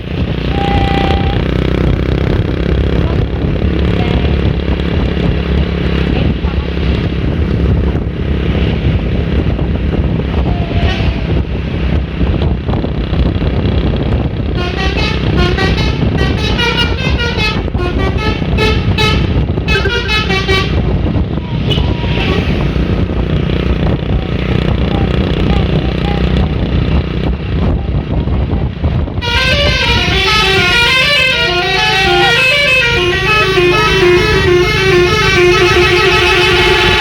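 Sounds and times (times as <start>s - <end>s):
low engine rumble: 0.0s - 37.0s
multi-tone air horn tune: 0.5s - 1.5s, 14.6s - 20.9s, 29.2s - 37.0s.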